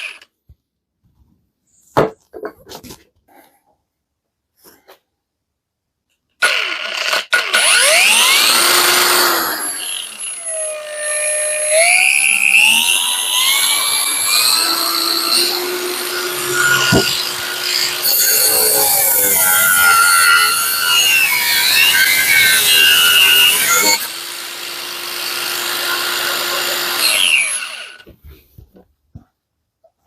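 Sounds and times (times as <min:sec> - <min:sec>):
angle grinder whining: 0:06.4 - 0:28.1.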